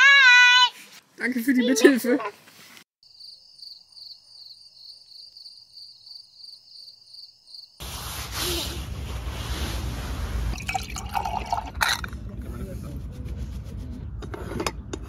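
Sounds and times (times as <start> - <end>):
insects chirping: 3.0 - 7.8.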